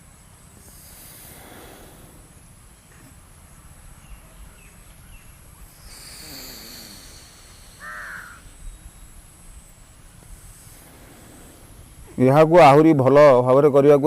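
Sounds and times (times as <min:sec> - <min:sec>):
hissing breath through nose: 0:00.6 - 0:02.6, 0:05.6 - 0:09.1, 0:09.9 - 0:12.2
bird call: 0:04.0 - 0:09.2.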